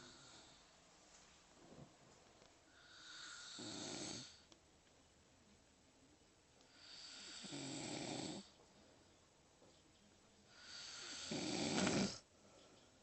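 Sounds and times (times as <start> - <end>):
person snoring: 2.7 - 4.4, 6.7 - 8.5, 10.5 - 12.2.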